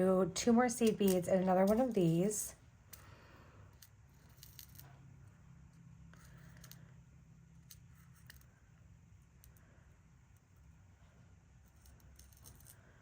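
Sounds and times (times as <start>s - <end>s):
low room hum: 0.0s - 13.0s
beads clicking and tapping: 0.8s - 2.3s.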